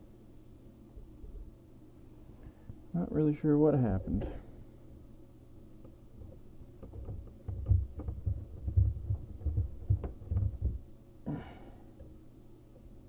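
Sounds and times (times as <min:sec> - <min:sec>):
low thumps of objects handled: 0:05.8 - 0:10.9.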